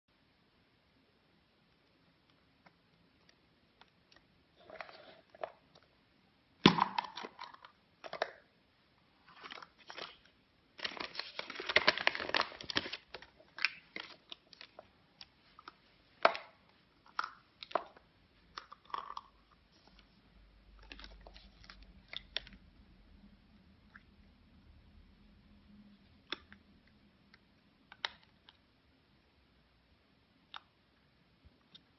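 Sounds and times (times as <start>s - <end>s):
foil wrapper crinkling and tearing: 10.8s - 14.8s.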